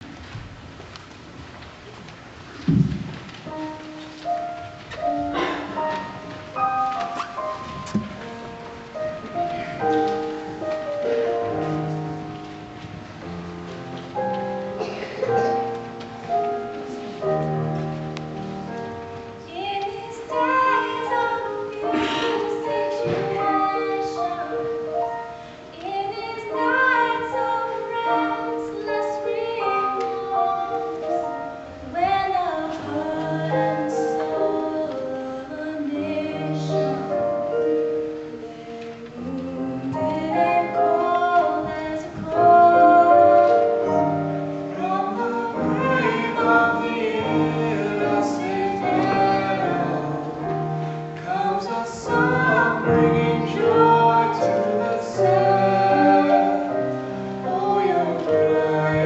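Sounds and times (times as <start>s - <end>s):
vocal ensemble singing: 19.5s - 24.8s, 32.4s - 37.6s, 38.3s - 59.0s.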